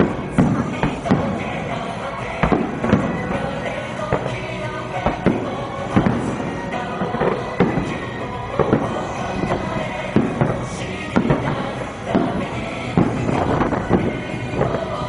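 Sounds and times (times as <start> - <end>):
fireworks bangs: 0.0 - 15.0
loud music: 0.0 - 15.0.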